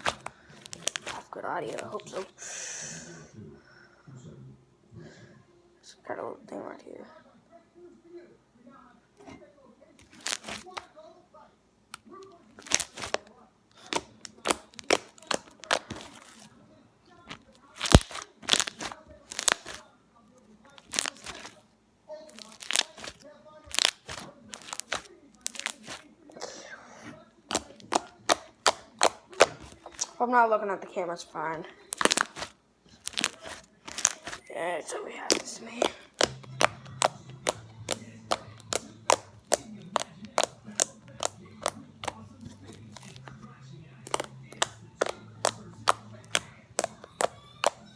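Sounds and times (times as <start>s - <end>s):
slime sticky crackles and pops: 0.0s - 2.3s, 10.0s - 10.9s, 12.0s - 16.5s, 17.3s - 19.8s, 20.8s - 21.6s, 22.3s - 26.0s, 27.5s - 30.2s, 31.8s - 34.5s, 35.3s - 43.4s, 44.0s - 47.9s.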